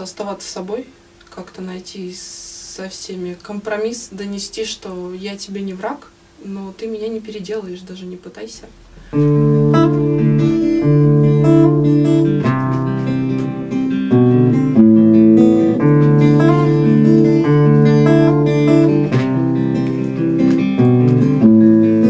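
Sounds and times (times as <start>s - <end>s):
acoustic guitar chords: 9.0s - 22.0s.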